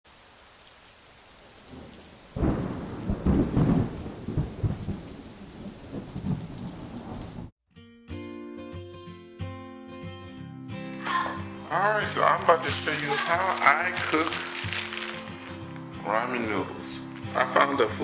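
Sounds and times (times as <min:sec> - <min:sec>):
steady rain: 0:00.1 - 0:07.5, 0:12.1 - 0:18.0
thunder rumbling: 0:01.5 - 0:07.5
music: 0:07.7 - 0:18.0.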